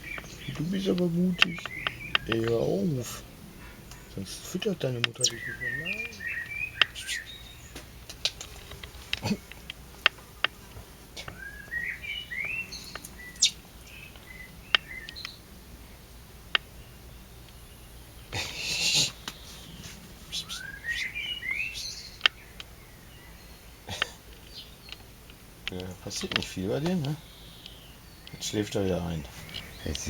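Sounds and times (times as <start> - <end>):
young blackbird chirping: 0.0 - 9.4, 11.2 - 25.2, 25.8 - 30.0
rustling: 6.8 - 11.4.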